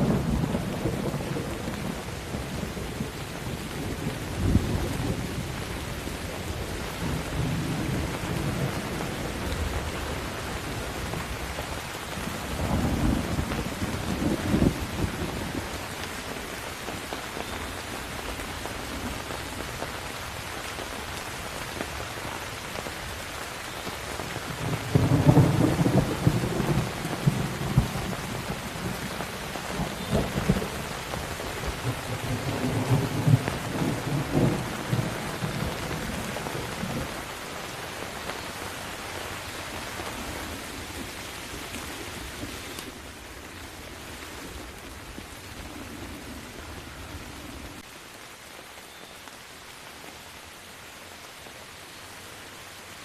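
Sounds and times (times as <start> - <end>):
heavy rain falling: 0.0 - 53.0
rolling thunder: 24.6 - 37.2.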